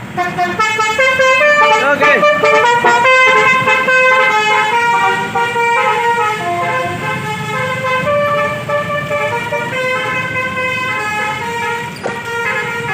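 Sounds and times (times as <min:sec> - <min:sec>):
truck engine running: 0:00.0 - 0:12.9
multi-tone air horn tune: 0:00.2 - 0:12.9.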